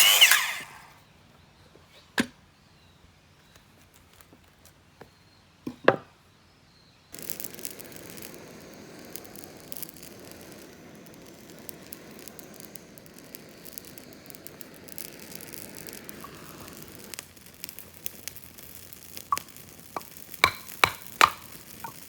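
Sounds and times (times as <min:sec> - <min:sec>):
wood fire crackling: 0:07.1 - 0:22.0.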